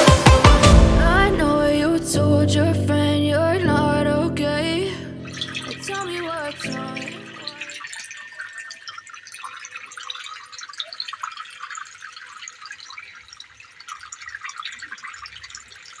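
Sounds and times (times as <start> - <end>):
water trickling and splashing: 5.1 - 16.0.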